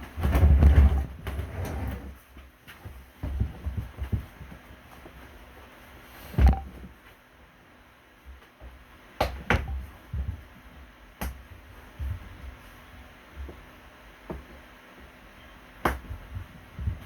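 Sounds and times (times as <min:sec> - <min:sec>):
soft low thuds: 0:15.9 - 0:17.0.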